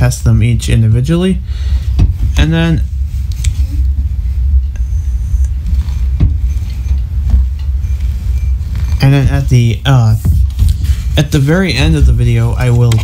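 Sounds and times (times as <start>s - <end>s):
low rumble: 0.0s - 13.0s.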